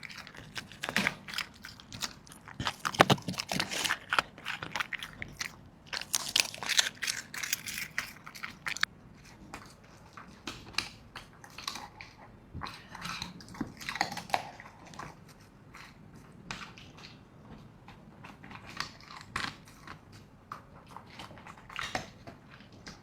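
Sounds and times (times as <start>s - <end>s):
dog chewing food: 0.0s - 23.0s.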